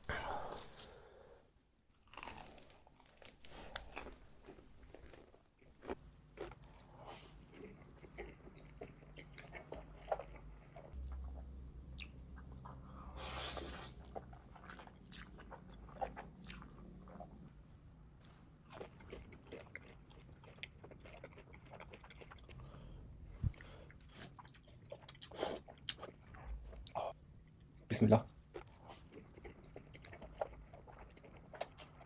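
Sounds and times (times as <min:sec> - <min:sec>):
crunchy chewing: 0:02.0 - 0:11.4, 0:12.0 - 0:17.2, 0:18.2 - 0:22.8.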